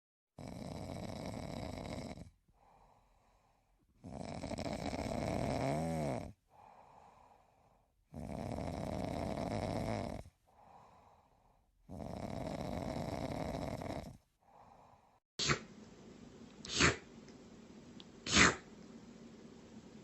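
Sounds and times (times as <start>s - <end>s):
cat snoring: 0.4s - 3.4s, 4.0s - 7.3s, 8.1s - 11.2s, 11.8s - 14.9s.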